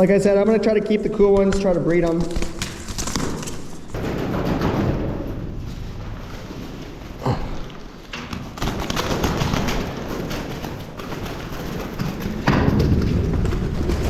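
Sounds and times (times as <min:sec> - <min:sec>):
pigeons flapping wings: 0:01.3 - 0:05.0, 0:08.1 - 0:14.0.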